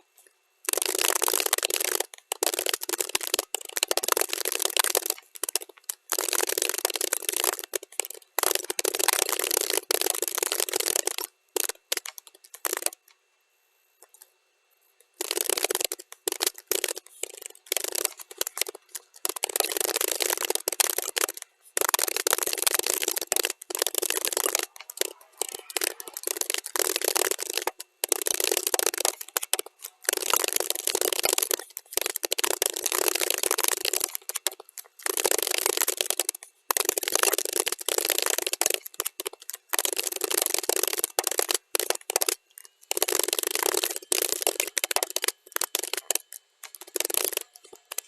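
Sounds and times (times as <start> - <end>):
rapid keyboard typing: 0.6 - 13.1, 15.2 - 48.0.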